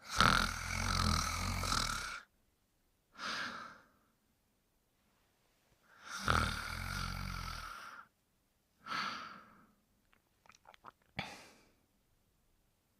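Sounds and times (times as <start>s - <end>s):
person snoring: 0.0s - 2.3s, 6.0s - 8.1s.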